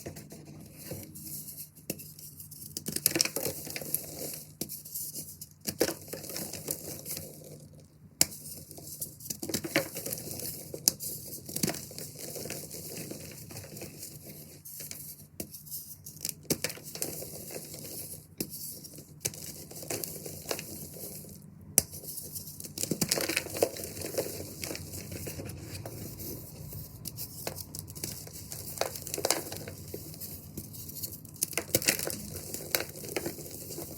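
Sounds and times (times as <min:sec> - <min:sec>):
chalk blocks crunching and snapping: 0:21.8 - 0:33.9
soft powdery crumbling: 0:22.0 - 0:33.9.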